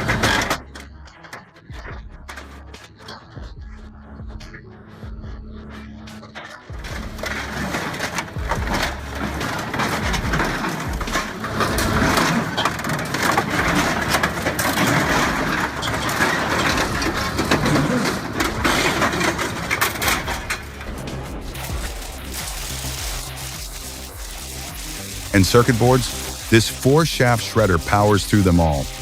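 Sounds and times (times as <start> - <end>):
industrial shredder crunching: 6.8 - 29.0.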